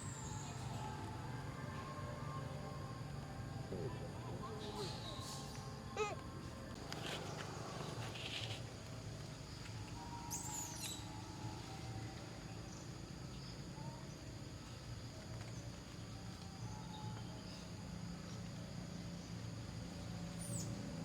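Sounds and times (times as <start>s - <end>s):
low background hum: 0.0s - 21.0s.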